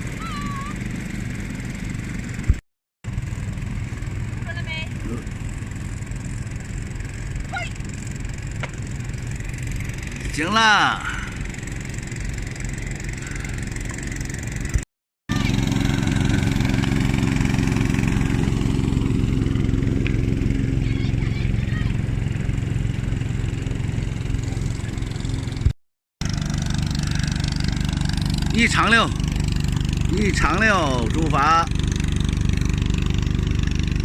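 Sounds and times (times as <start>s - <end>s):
small boat motor running: 0.0s - 34.0s.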